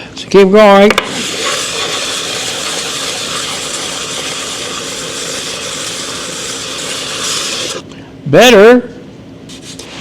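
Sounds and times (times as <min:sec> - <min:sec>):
metal rubbed on sandpaper: 0:01.1 - 0:07.8.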